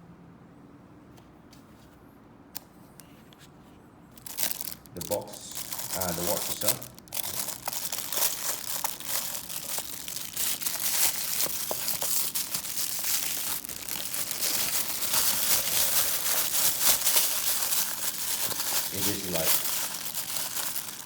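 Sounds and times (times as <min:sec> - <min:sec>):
plastic packaging crinkling: 0:04.2 - 0:21.0.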